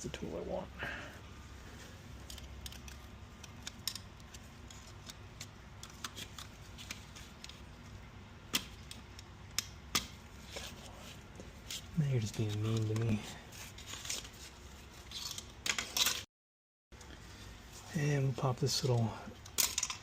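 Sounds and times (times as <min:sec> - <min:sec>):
low steady hum: 0:00.0 - 0:16.2.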